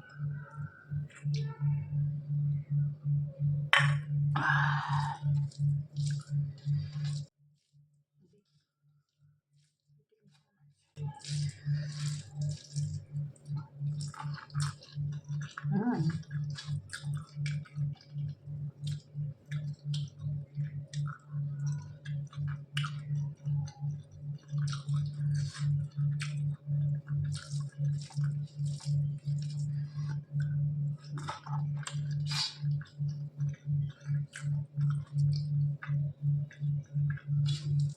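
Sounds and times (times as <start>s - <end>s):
low pulsing: 0.0s - 7.3s, 15.4s - 16.6s
chewing with wet mouth clicks: 5.4s - 7.3s, 11.2s - 37.9s.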